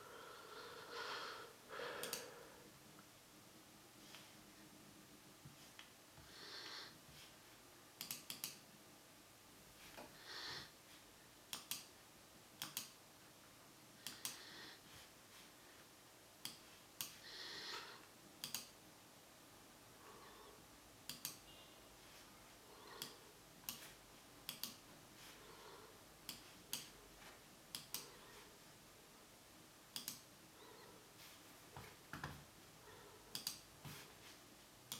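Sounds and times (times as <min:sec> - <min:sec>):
sharp clicks: 0:02.0 - 0:02.3, 0:08.0 - 0:08.6, 0:11.5 - 0:11.9, 0:12.6 - 0:13.0, 0:18.4 - 0:18.8, 0:21.1 - 0:21.4, 0:24.5 - 0:24.8, 0:30.0 - 0:30.3, 0:33.3 - 0:33.6.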